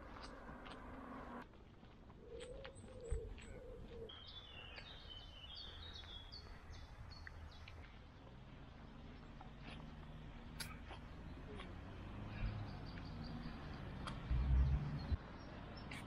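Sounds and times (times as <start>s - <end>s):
bird cooing: 2.2s - 4.1s.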